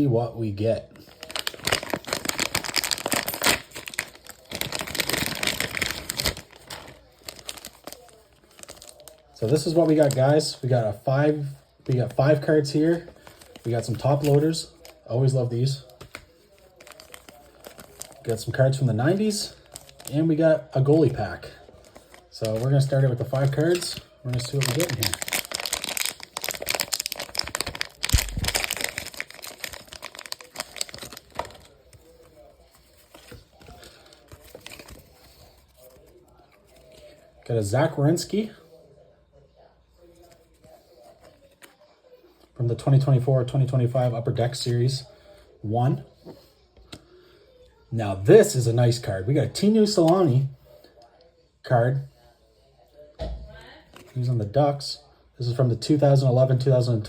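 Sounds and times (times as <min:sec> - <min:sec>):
plastic wrapping torn and crinkled: 0:01.0 - 0:10.2, 0:15.8 - 0:18.4, 0:19.2 - 0:20.2, 0:21.7 - 0:37.1.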